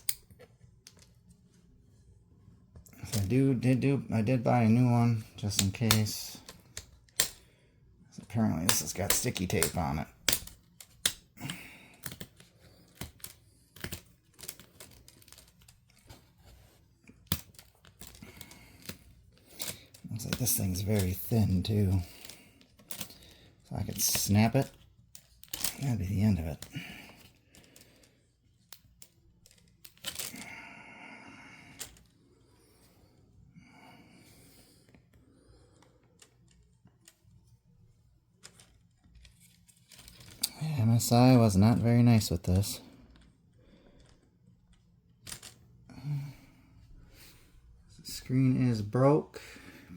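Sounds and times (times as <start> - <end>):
plastic pry tools clicking and snapping: 5.4 - 7.5, 8.6 - 15.6, 17.2 - 21.3, 23.9 - 25.9, 28.7 - 30.4.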